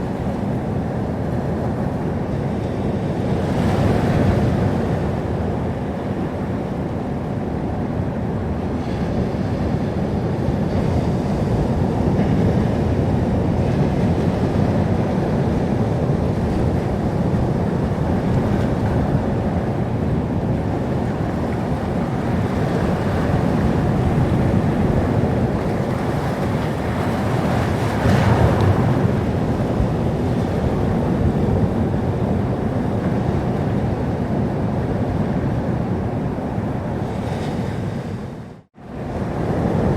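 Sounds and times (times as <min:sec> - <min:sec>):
waves washing on shore: 0:00.0 - 0:39.9
wave breaking: 0:20.7 - 0:33.8.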